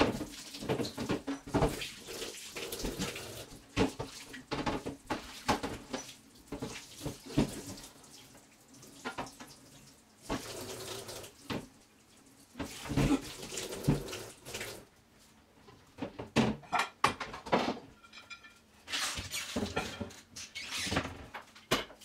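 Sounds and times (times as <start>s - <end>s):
dishes knocking and clattering: 0.0s - 1.8s, 3.7s - 7.7s, 16.0s - 18.7s, 19.5s - 20.3s, 20.9s - 22.0s
tap water running into a sink: 0.0s - 14.9s.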